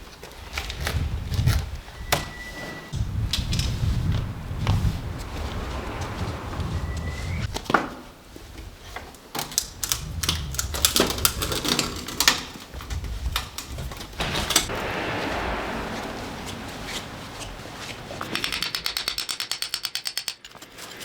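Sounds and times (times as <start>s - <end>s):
steady rushing sound: 3.0s - 8.2s, 14.2s - 19.3s.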